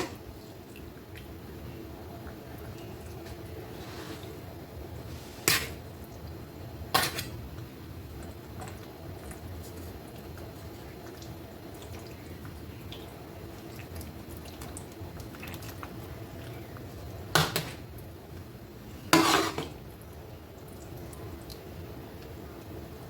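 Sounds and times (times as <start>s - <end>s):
utensils clinking and scraping dish: 19.2s - 19.7s.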